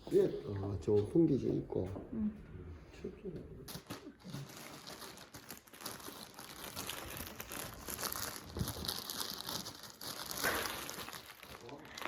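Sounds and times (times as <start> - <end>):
gift wrapping crinkling: 3.7 - 12.0.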